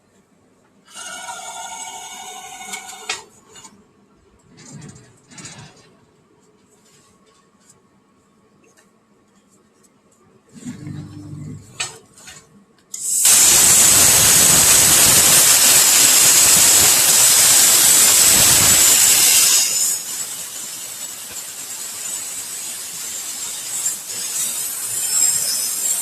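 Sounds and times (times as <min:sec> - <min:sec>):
plasma torch hissing: 0:13.0 - 0:26.0.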